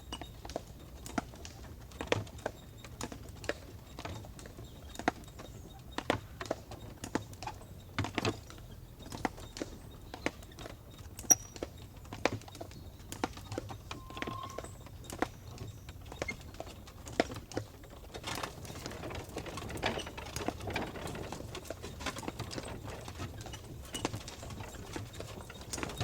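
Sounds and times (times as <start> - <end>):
horse hooves clip-clopping: 0.0 - 26.0
short squeak: 11.3 - 11.7, 13.4 - 16.4.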